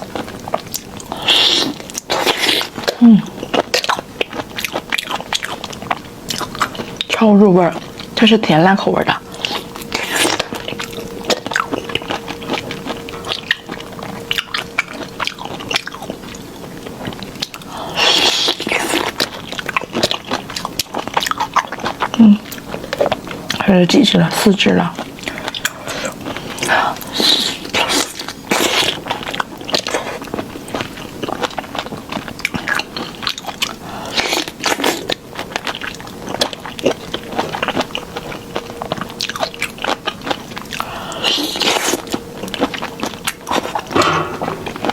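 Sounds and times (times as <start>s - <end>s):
crunchy chewing: 0.0s - 44.9s
sauce squishing: 9.1s - 23.6s
wet chewing smacks: 24.9s - 44.9s.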